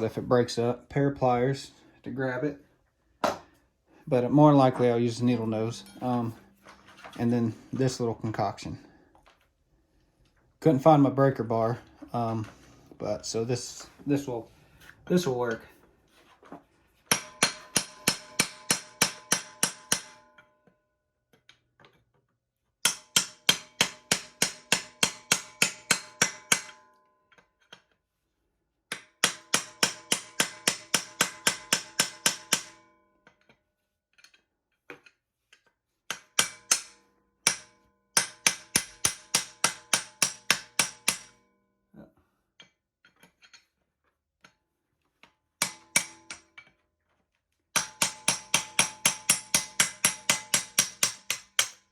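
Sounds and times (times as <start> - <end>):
hammer striking metal: 17.1 - 20.4, 22.8 - 27.0, 28.9 - 33.0, 36.1 - 41.5, 45.6 - 46.5, 47.8 - 51.8.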